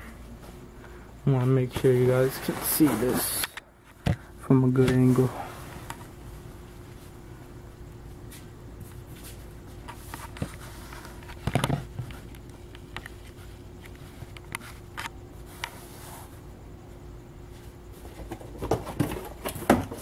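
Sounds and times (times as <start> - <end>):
faint steady hum: 0.0 - 20.0
objects being moved by hand: 1.4 - 4.2
rustling: 1.7 - 3.5.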